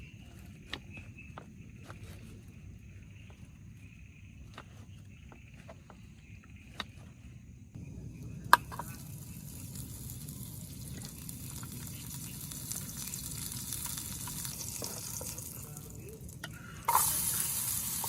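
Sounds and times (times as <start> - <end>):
steady rain falling: 8.2 - 18.0.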